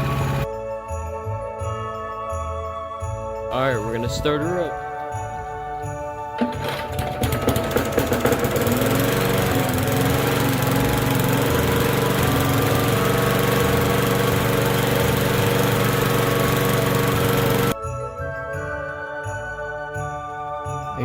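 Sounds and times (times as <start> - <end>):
small gasoline engine running: 0.0 - 0.5, 6.4 - 17.8.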